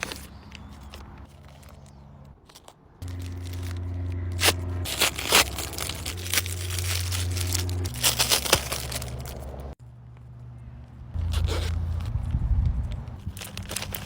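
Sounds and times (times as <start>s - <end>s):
paper crinkling and tearing: 0.0s - 9.8s, 11.2s - 12.2s, 13.2s - 14.0s
sustained low notes: 3.0s - 13.2s.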